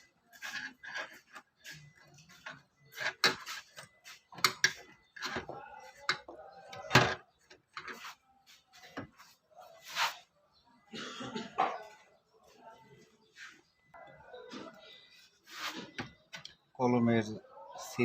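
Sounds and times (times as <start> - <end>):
metal tools clinking and scraping: 0.3 - 8.2.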